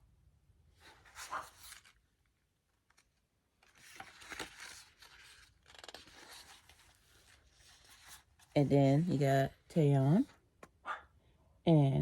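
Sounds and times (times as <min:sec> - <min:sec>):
paper pages rustling: 0:00.8 - 0:02.1, 0:02.8 - 0:09.3.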